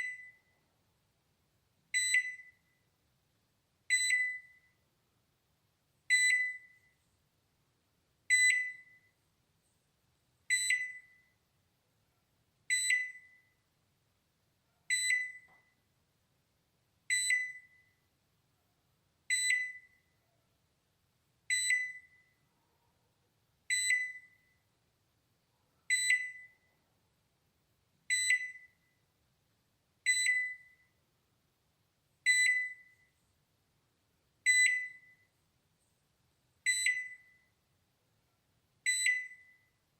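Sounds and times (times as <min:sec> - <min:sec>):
microwave oven short high beeps: 0:02.0 - 0:02.6, 0:03.9 - 0:04.7, 0:06.1 - 0:06.9, 0:08.3 - 0:09.1, 0:10.5 - 0:11.3, 0:17.1 - 0:17.9, 0:19.3 - 0:20.0, 0:21.5 - 0:22.2, 0:23.7 - 0:24.5, 0:28.1 - 0:28.8, 0:30.1 - 0:30.8, 0:32.3 - 0:33.0, 0:34.5 - 0:35.2, 0:36.7 - 0:37.5, 0:38.9 - 0:39.7.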